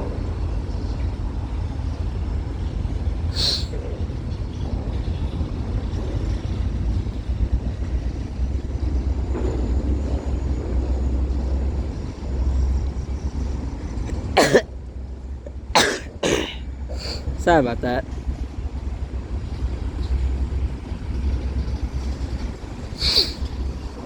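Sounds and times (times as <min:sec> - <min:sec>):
freight train rumbling on rails: 0:00.0 - 0:24.0
person coughing: 0:14.4 - 0:14.7, 0:15.8 - 0:17.3.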